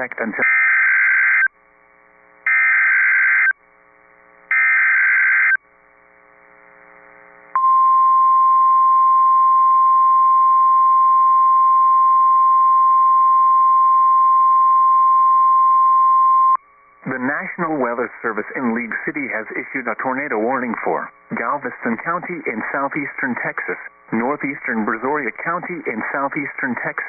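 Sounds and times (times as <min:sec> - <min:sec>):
steady warning alarm tone: 0:02.5 - 0:03.5, 0:04.5 - 0:05.6.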